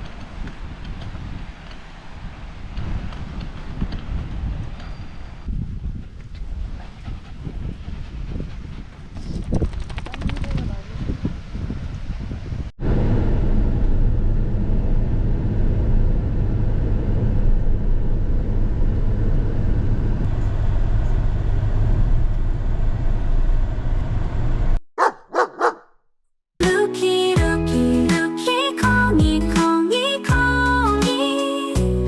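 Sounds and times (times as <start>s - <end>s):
upbeat background music: 26.6s - 32.0s.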